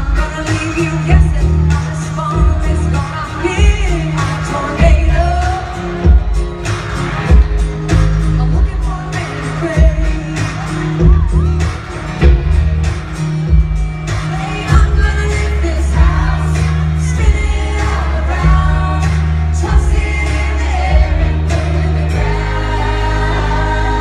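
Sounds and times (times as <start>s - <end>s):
person singing: 0.0s - 6.5s, 7.3s - 12.0s, 14.1s - 24.0s
live band playing: 0.0s - 24.0s
heavy bass line: 9.8s - 24.0s.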